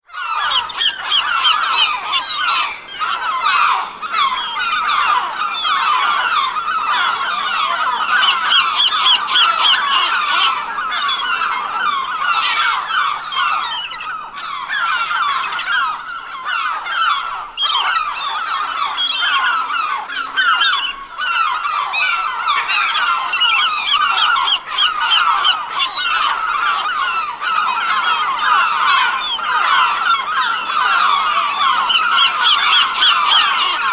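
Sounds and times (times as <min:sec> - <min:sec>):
flock of gulls squawking: 0:00.1 - 0:33.9.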